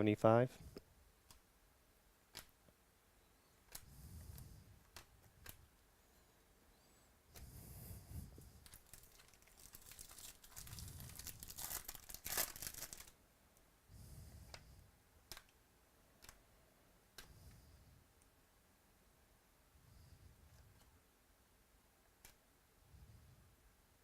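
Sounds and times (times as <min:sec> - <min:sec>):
plastic wrapper crinkling and tearing: 0:08.6 - 0:13.2.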